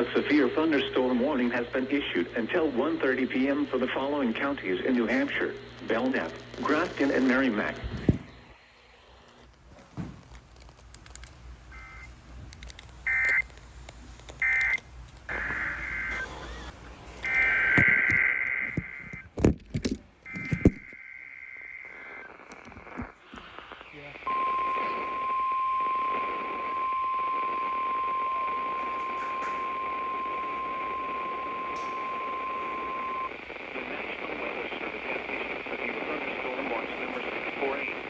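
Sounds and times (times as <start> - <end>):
radio hiss: 0.0 - 9.5, 11.7 - 19.3, 20.2 - 38.0
sharp clicks: 12.5 - 15.3
warbling data tones: 14.4 - 19.3
steady alarm tone: 24.3 - 33.3.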